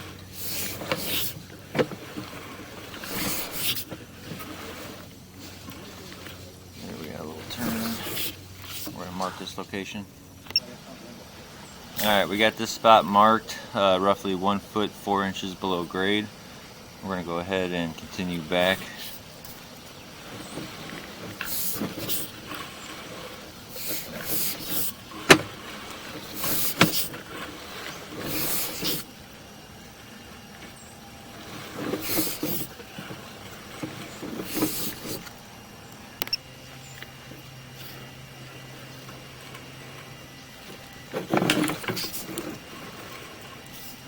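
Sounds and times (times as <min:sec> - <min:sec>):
cable scraping in drain: 0:00.0 - 0:06.9, 0:18.5 - 0:29.2, 0:31.3 - 0:35.4, 0:40.6 - 0:44.0
low steady hum: 0:00.0 - 0:44.0.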